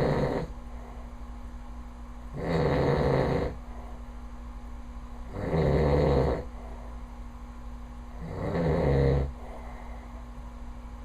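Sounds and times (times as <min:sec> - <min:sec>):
man snoring loudly: 0:00.0 - 0:00.5, 0:02.3 - 0:03.6, 0:05.3 - 0:06.5, 0:08.2 - 0:09.4
steady low hum: 0:00.0 - 0:11.0.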